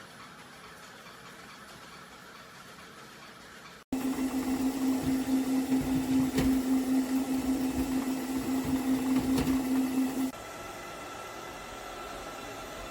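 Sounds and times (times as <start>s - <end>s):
robot vacuum motor hum: 4.0s - 10.4s.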